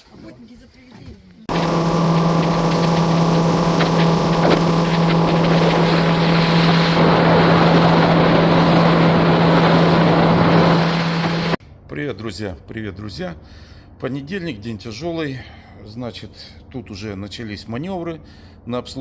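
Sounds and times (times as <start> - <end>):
motorboat engine running: 1.5 - 11.6.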